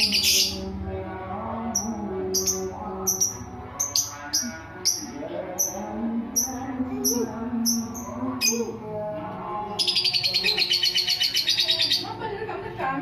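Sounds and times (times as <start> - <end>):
bird chirping: 9.8 - 12.1
bird trilling: 9.8 - 12.1.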